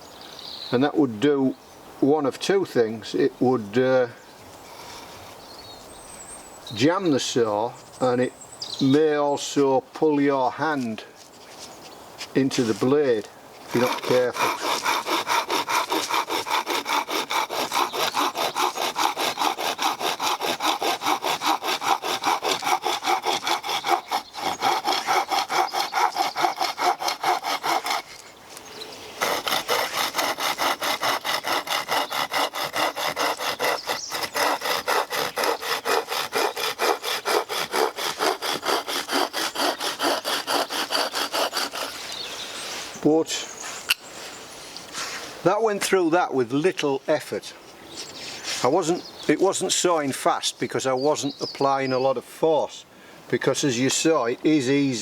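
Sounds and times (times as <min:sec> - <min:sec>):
hand-sawing wood: 0:12.5 - 0:42.9.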